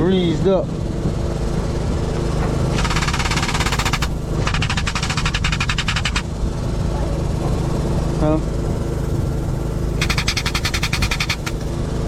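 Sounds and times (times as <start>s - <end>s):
engine running: 0.0s - 12.0s
rapid mechanical rattling: 2.5s - 6.6s, 8.9s - 12.0s.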